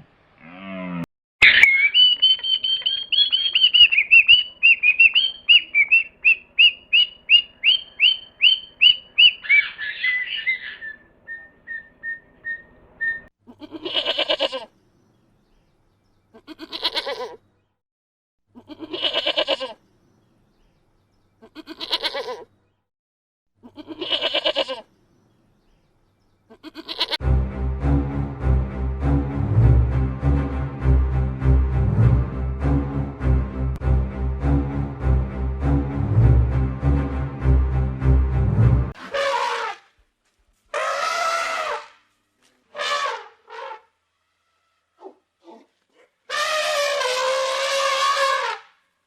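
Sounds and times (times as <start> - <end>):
high-pitched chirps: 1.4 - 10.8
farm animal bleating: 13.5 - 14.7, 16.3 - 17.4, 18.6 - 19.8, 21.4 - 22.5, 23.6 - 24.9, 26.5 - 27.2
music: 27.2 - 39.0.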